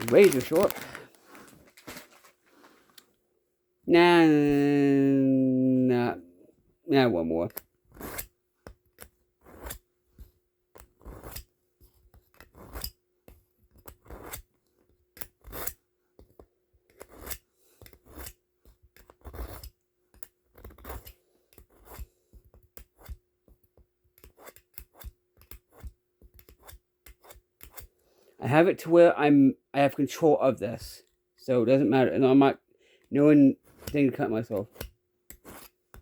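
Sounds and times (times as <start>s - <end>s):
knife scraping on a sharpener: 7.5s - 8.3s, 9.0s - 9.8s, 10.8s - 11.5s, 12.3s - 13.0s, 13.8s - 14.4s, 15.2s - 15.8s, 16.9s - 18.4s, 19.0s - 22.1s, 24.2s - 27.9s, 33.6s - 34.0s, 34.6s - 36.0s.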